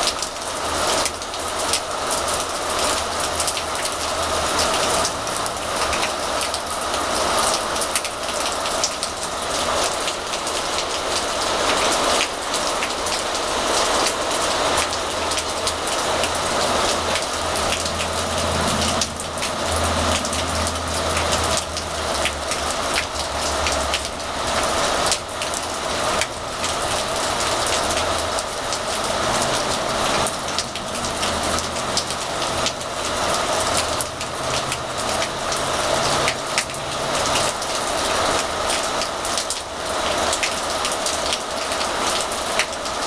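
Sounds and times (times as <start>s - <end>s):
steady rain falling: 0.0s - 43.0s.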